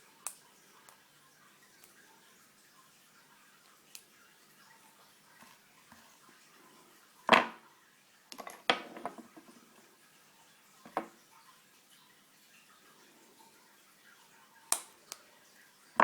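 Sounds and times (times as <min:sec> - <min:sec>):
small parts clicking and rattling: 0:08.3 - 0:09.5.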